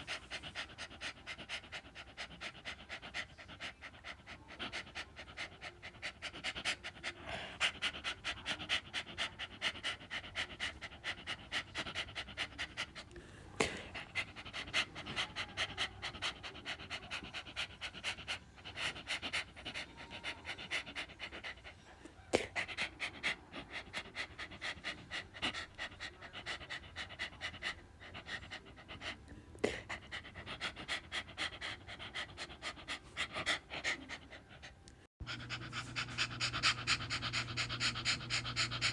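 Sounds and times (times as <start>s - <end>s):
dog panting: 0.0s - 38.9s.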